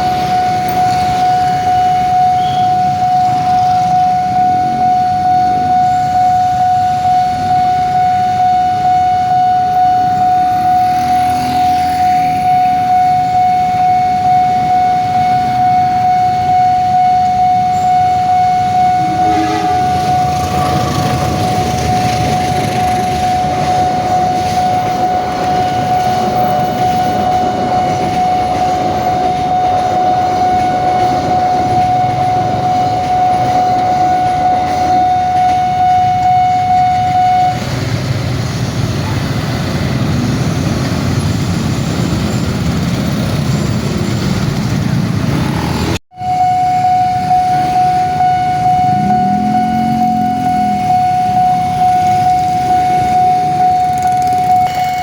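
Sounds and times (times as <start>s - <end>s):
train rumbling and clattering: 0.0s - 7.5s, 18.3s - 46.0s
level-crossing alarm tone: 0.0s - 55.0s.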